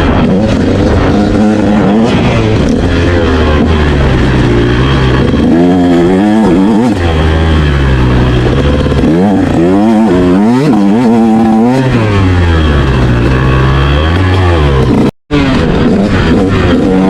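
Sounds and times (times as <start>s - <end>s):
motorcycle engine revving: 0.0s - 17.0s.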